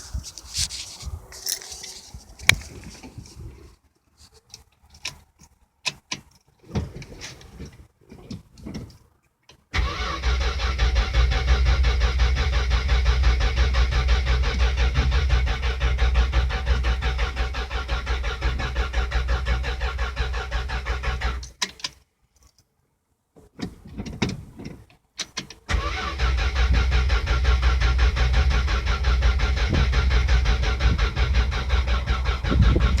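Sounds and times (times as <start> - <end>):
starter motor cranking engine: 9.8 - 21.6, 25.7 - 33.0.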